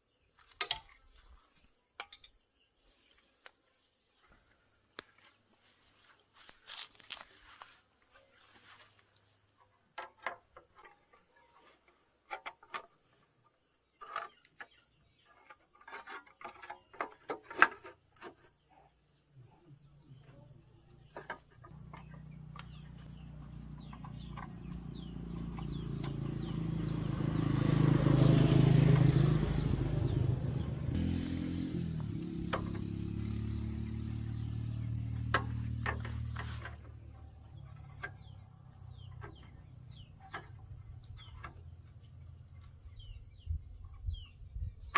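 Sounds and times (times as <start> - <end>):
engine running: 20.1 - 43.4.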